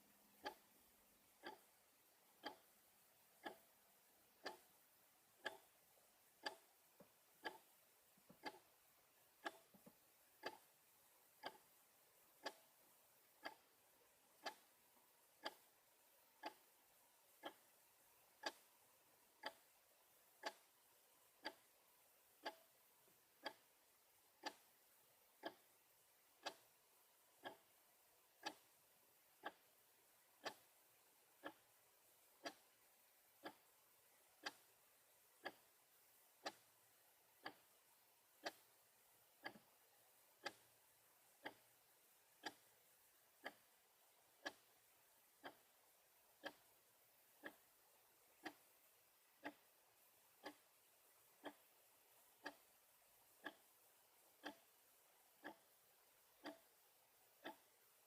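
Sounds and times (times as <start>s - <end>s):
clock ticking: 0.3s - 48.8s, 49.4s - 58.0s
faint clicks: 0.4s - 0.6s, 1.4s - 1.6s, 2.4s - 2.7s, 3.4s - 3.7s, 6.4s - 8.7s, 9.4s - 10.6s, 11.4s - 11.6s, 12.4s - 12.7s, 15.4s - 15.7s, 16.4s - 16.6s, 19.4s - 19.6s, 22.4s - 22.7s, 25.4s - 25.7s, 29.4s - 29.6s, 32.4s - 32.7s, 34.4s - 34.7s, 35.4s - 35.7s, 38.4s - 38.7s, 40.4s - 40.7s, 41.4s - 41.6s, 42.4s - 42.7s, 44.4s - 44.7s, 46.4s - 46.6s, 48.4s - 48.6s, 49.4s - 49.6s, 51.4s - 51.7s, 53.4s - 53.6s, 54.4s - 54.7s, 55.4s - 55.6s, 56.4s - 56.7s, 57.4s - 57.7s.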